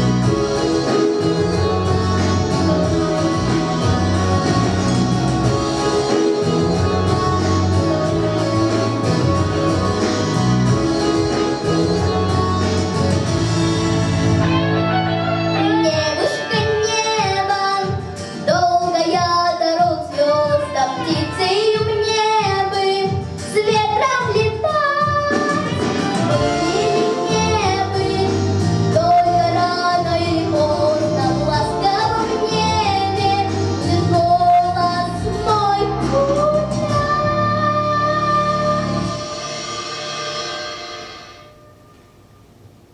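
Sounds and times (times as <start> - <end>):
guitar accompaniment: 0.0 - 42.4
woman singing: 15.5 - 39.2.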